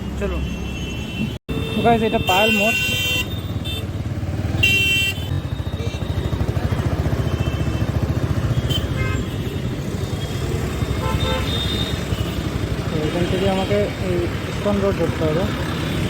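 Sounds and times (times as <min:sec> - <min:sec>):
vehicle horn honking: 0:00.4 - 0:03.9, 0:04.5 - 0:06.4, 0:07.0 - 0:13.9
motorcycle engine running: 0:03.4 - 0:16.0.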